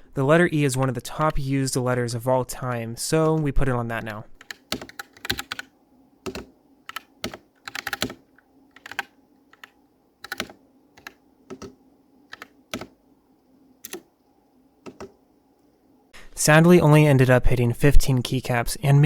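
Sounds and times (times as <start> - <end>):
computer keyboard clacking: 3.2 - 13.0, 13.8 - 15.2.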